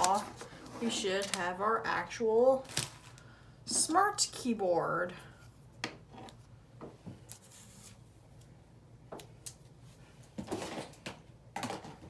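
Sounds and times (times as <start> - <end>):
cardboard packaging rustling: 0.0 - 1.6.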